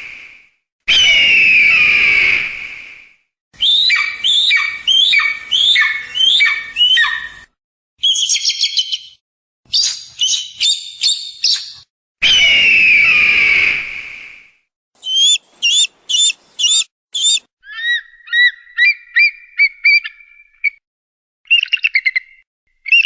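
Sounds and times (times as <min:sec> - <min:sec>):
eagle calling: 0:03.6 - 0:07.4, 0:15.0 - 0:20.2.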